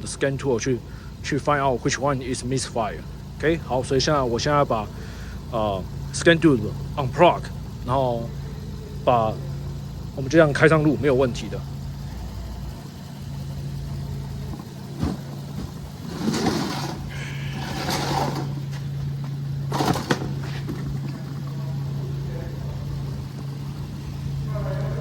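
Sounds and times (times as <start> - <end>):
engine idling: 0.0 - 25.0
handling clatters and rustles: 12.9 - 22.2.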